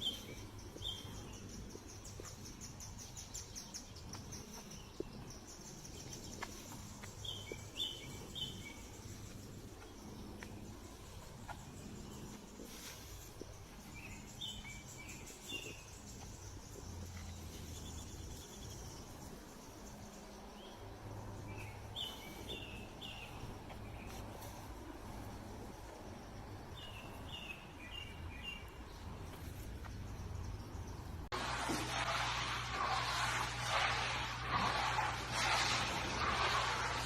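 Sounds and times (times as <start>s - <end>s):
bird chirps: 0.0s - 24.7s.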